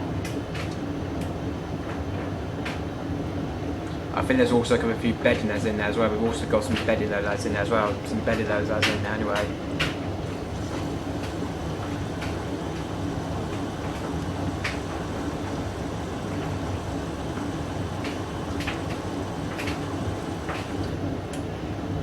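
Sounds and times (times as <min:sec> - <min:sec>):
washing machine motor hum: 0:00.0 - 0:22.0
washing machine swishes and clicks: 0:08.3 - 0:21.4.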